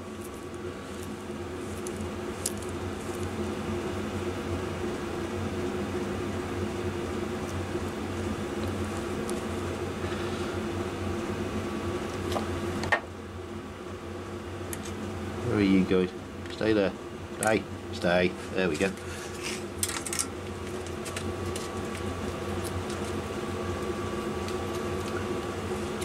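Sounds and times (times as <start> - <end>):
small fan humming: 0.0 - 26.0.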